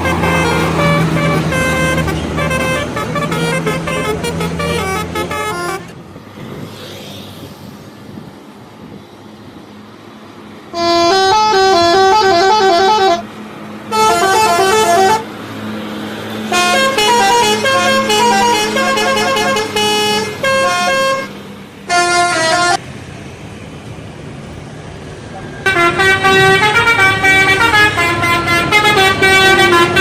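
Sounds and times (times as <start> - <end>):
bus horn playing multi-note melody: 0.0 - 6.0, 10.7 - 15.4, 16.3 - 22.8, 25.6 - 30.0.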